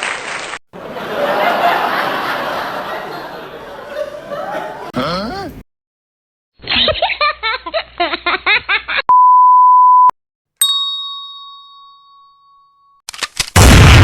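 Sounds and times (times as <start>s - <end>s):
censor bleep: 9.1s - 10.1s
bell-like ding: 10.6s - 13.0s.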